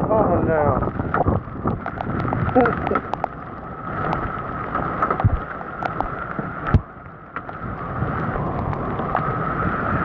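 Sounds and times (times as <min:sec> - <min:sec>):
wind rushing on microphone: 0:00.0 - 0:10.0
hailstones hitting ground and metal: 0:00.8 - 0:06.2.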